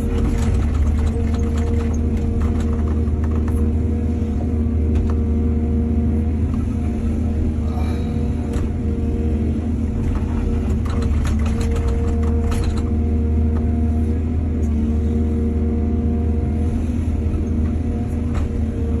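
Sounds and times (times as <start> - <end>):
rattling clattering knocks: 0.0 - 3.6
excavator diesel engine running: 0.0 - 19.0.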